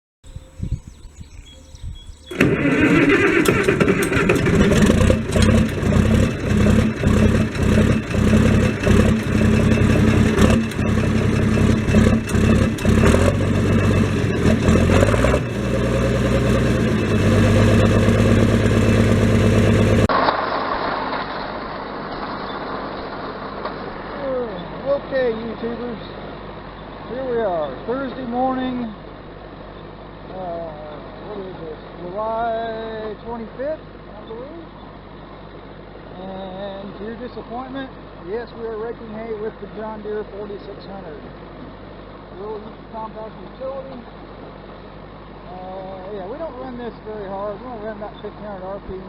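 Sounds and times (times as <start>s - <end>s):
tractor engine running: 0.3s - 25.6s.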